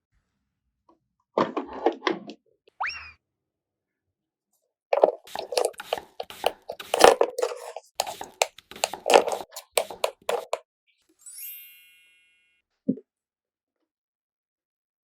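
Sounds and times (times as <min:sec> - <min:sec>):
crunchy clicks and taps: 0:05.0 - 0:10.6.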